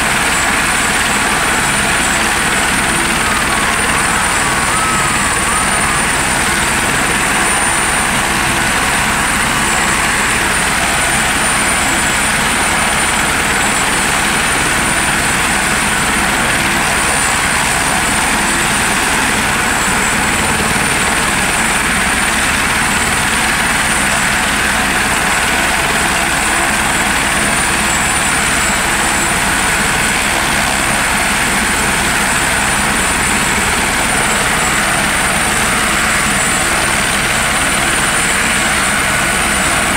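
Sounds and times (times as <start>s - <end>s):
helicopter rotor noise: 0.0s - 39.9s.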